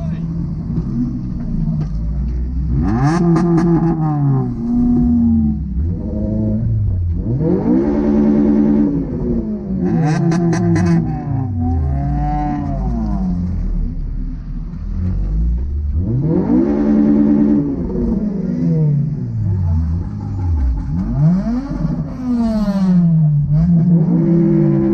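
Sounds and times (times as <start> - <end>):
car engine revving: 0.0 - 24.9.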